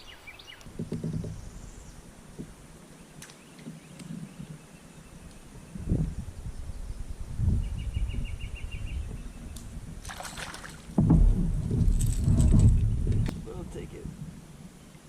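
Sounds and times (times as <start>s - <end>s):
boat thumps and rumble: 0.7s - 1.7s, 9.0s - 14.4s
water moving around kayak: 9.0s - 15.0s.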